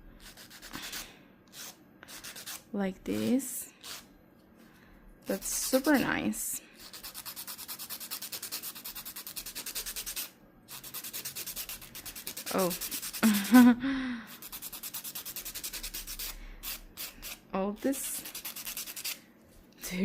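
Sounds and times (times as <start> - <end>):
nail file scraping fingernail: 0.2 - 2.6, 3.8 - 4.0, 6.8 - 13.2, 14.4 - 17.4, 18.0 - 19.2.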